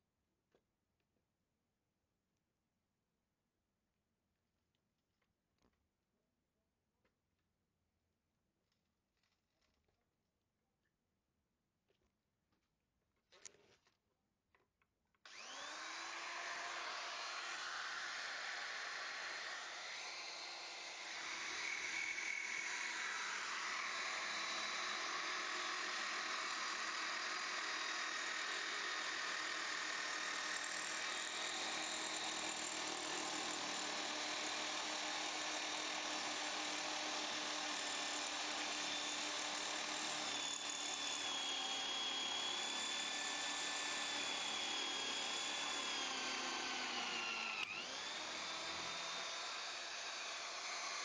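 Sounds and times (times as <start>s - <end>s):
power tool motor whine: 15.3s - 51.0s.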